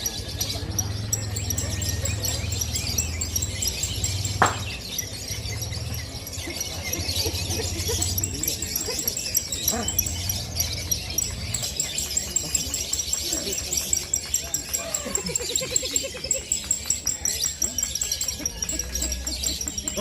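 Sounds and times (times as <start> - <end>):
songbirds chirping in chorus: 0.0 - 20.0
sharp knock: 4.4 - 4.8.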